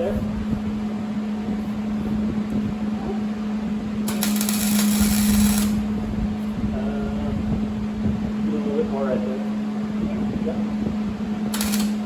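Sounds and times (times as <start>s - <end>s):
steady low hum: 0.0s - 12.0s
welding arc crackling: 4.0s - 6.0s, 11.5s - 12.0s.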